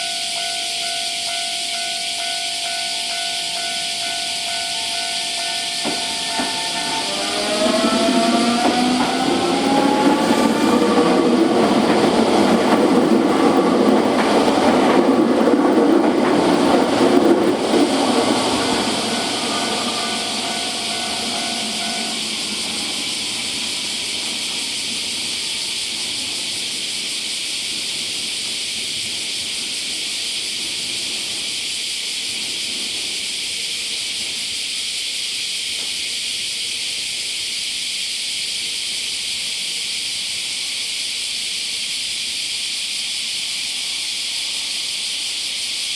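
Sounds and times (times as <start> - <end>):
steady high hiss: 0.0 - 14.7, 16.4 - 45.9
ringing from wheels and rails: 0.0 - 27.2
train passing: 1.2 - 33.7.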